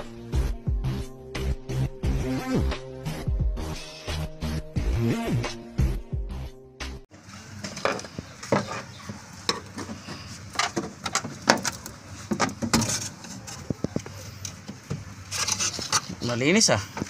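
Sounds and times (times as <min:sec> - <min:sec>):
clicks and knocks of tools: 0:07.6 - 0:16.2.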